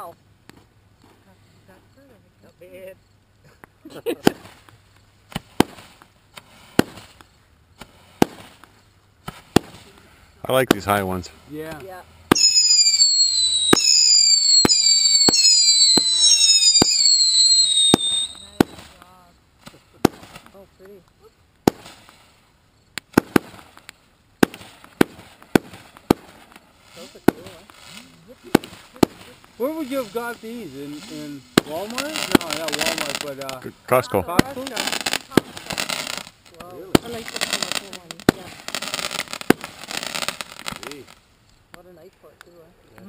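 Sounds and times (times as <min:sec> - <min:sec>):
fainter fireworks pops: 0:00.0 - 0:01.3, 0:03.4 - 0:43.0
fireworks loud sharp bangs: 0:04.2 - 0:04.7, 0:05.3 - 0:07.2, 0:07.8 - 0:19.0, 0:19.6 - 0:20.6, 0:21.6 - 0:22.3, 0:23.0 - 0:41.2.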